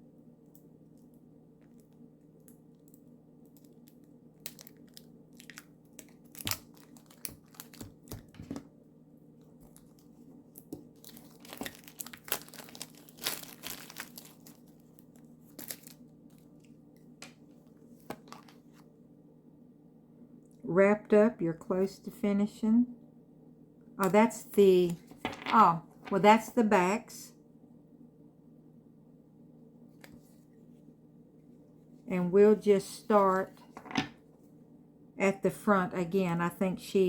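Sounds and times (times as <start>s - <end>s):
wrapping torn and crinkled: 2.7s - 8.5s, 9.6s - 16.7s.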